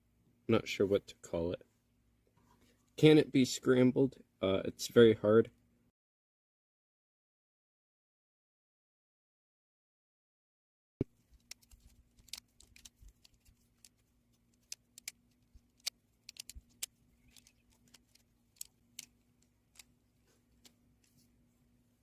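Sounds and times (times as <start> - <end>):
faint steady hum: 11.0 - 22.0
plastic puzzle cube clicking: 11.4 - 19.9.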